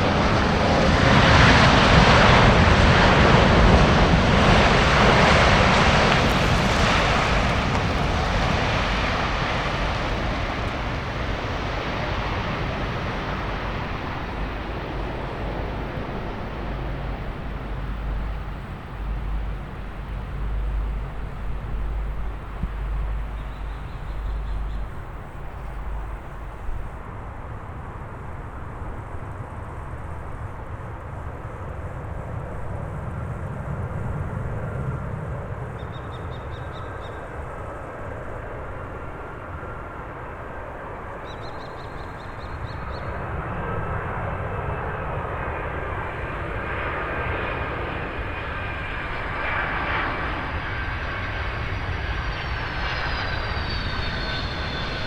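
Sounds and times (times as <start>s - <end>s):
jet airliner engine rumble: 0.0s - 55.0s
bird calls: 22.7s - 26.7s, 35.8s - 37.3s, 41.2s - 43.2s.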